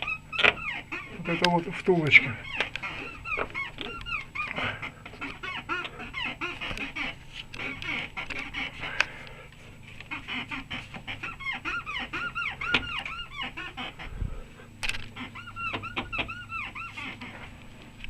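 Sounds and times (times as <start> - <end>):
rubber bushing squeaking: 0.0 - 9.0, 15.0 - 17.6.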